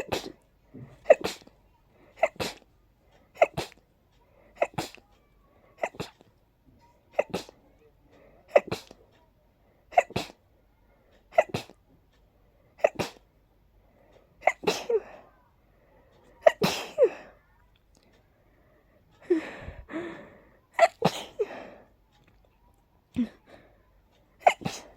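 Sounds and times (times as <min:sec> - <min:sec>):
person sneezing: 0:00.0 - 0:00.4, 0:01.0 - 0:01.5, 0:02.2 - 0:02.6, 0:03.4 - 0:03.8, 0:04.6 - 0:05.0, 0:05.8 - 0:06.3, 0:07.2 - 0:07.6, 0:08.5 - 0:09.0, 0:11.3 - 0:11.8, 0:12.8 - 0:13.2, 0:14.4 - 0:15.1, 0:16.4 - 0:17.3, 0:24.4 - 0:24.9.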